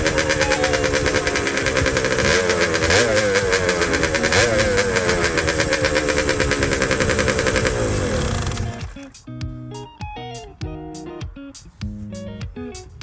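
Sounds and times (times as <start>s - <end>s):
two-stroke engine throttle blips: 0.0s - 9.1s.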